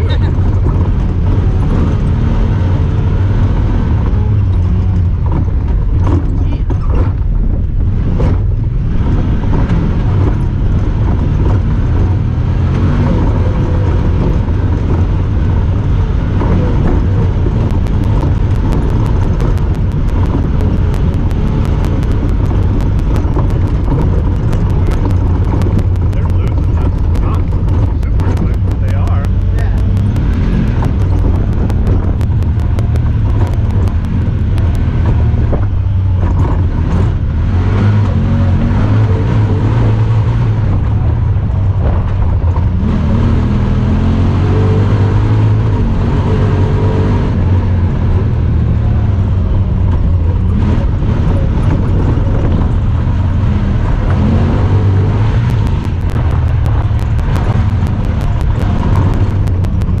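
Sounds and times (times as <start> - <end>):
vehicle engine running: 0.0 - 60.0.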